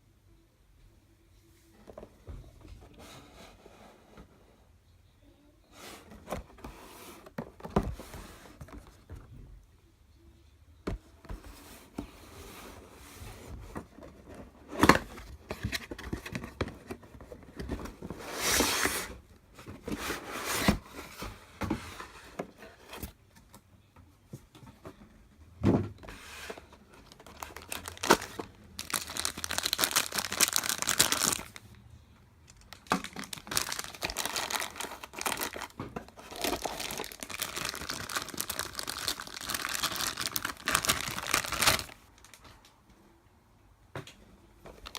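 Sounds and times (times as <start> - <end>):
plastic and paper crinkling: 26.4 - 31.7, 32.5 - 42.6.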